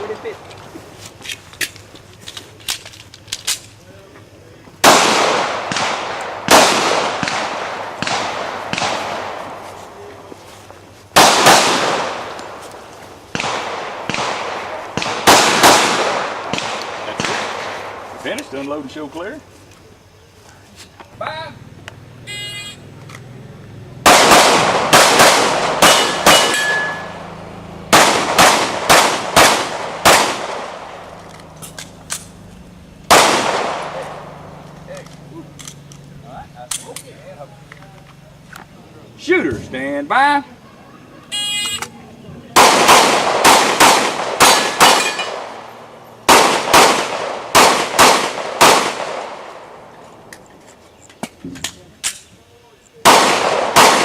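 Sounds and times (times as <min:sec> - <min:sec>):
pistol shots: 0:04.8 - 0:09.6, 0:11.2 - 0:12.6, 0:13.3 - 0:18.1, 0:24.0 - 0:27.2, 0:27.9 - 0:32.4, 0:33.1 - 0:34.4, 0:42.6 - 0:49.9, 0:53.0 - 0:54.0
steel target ringing: 0:25.9 - 0:27.2.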